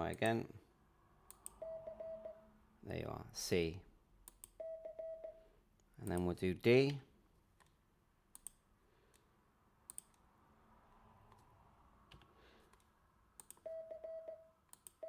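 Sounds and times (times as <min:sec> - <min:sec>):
morse code beeps: 0:01.6 - 0:02.4, 0:04.6 - 0:05.4, 0:13.6 - 0:14.5.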